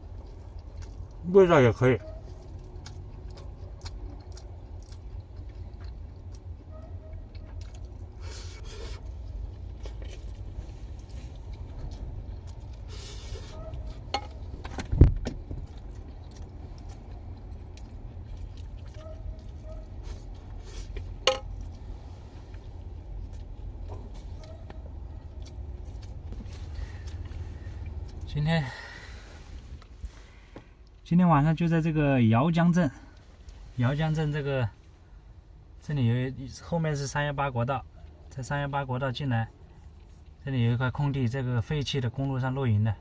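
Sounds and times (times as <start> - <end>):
chewing: 0.0 - 14.7, 15.3 - 31.1, 39.2 - 40.5.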